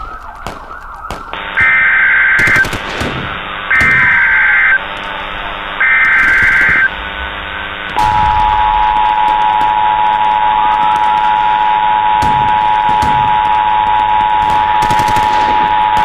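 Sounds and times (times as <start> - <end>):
gunshots: 0.0 - 16.0
police siren wailing: 0.0 - 16.0
two-tone alert signal: 8.0 - 12.0.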